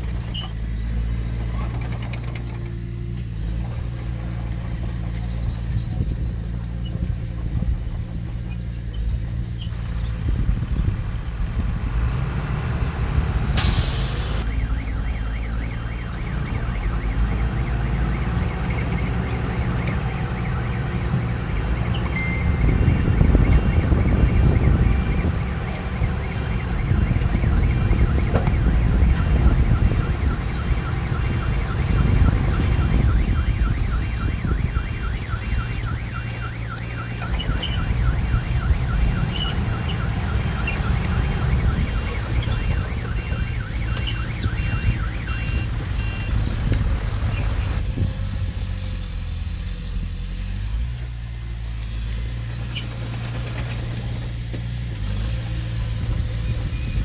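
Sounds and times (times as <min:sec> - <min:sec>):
diesel engines under load: 0:00.0 - 0:57.0
vehicle reverse alarm beeping: 0:12.1 - 0:47.8
short hiss: 0:13.6 - 0:14.4.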